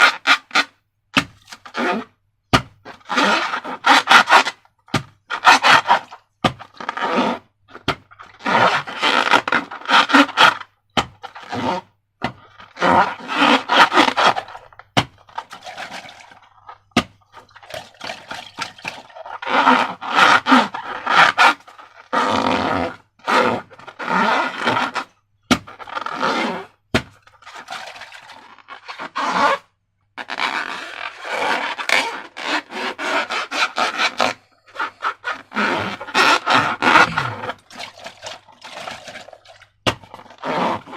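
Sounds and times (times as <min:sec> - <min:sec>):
slime squelching: 0:34.8 - 0:40.9.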